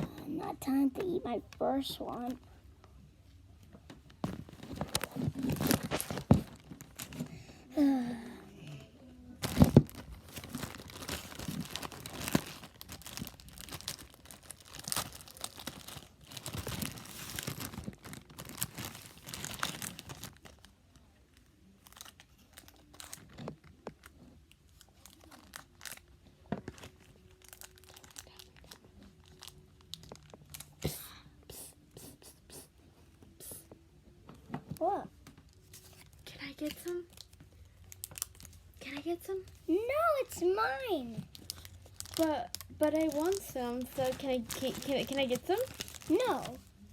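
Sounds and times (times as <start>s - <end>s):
plastic bag crinkling: 4.0s - 7.3s, 9.4s - 30.8s, 35.5s - 46.9s.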